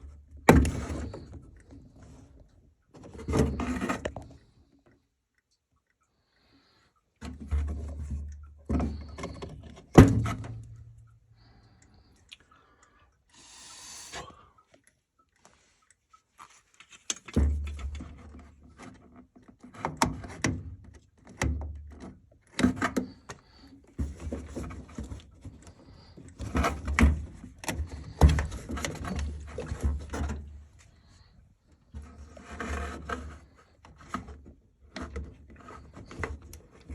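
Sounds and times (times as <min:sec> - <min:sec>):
knocks and clunks from equipment: 0:08.7 - 0:10.6.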